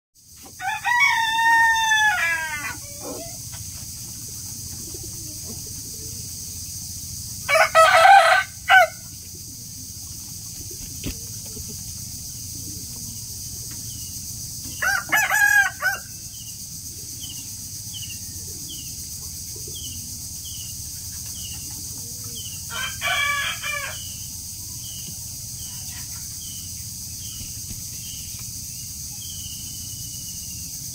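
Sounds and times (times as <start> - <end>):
rooster crowing: 0.5 - 3.4, 7.4 - 9.1, 14.7 - 16.3, 22.5 - 24.3.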